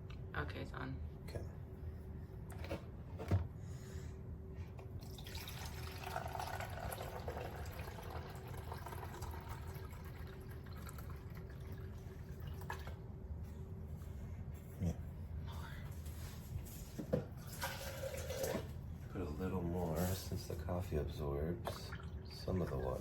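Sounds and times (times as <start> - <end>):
water running: 5.0 - 13.0, 17.4 - 23.0.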